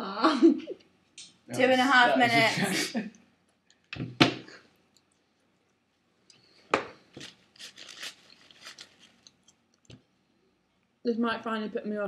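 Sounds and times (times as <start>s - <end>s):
wrappers rustling: 7.1s - 9.6s
crackling rustles and clicks: 7.1s - 10.0s.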